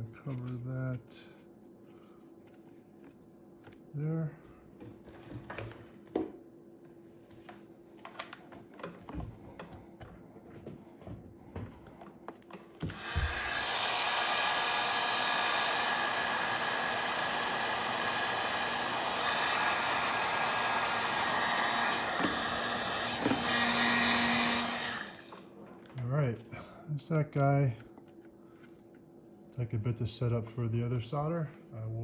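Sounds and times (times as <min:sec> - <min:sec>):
heat gun blowing: 0:12.8 - 0:25.4.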